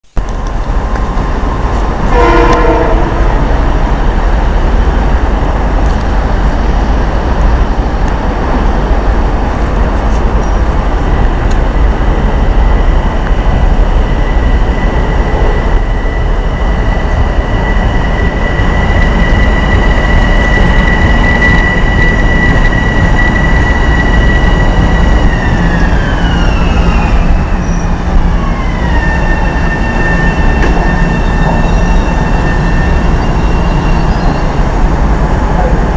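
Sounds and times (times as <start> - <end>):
electric train running with whine: 0.2 - 35.9
train horn note: 2.1 - 3.6.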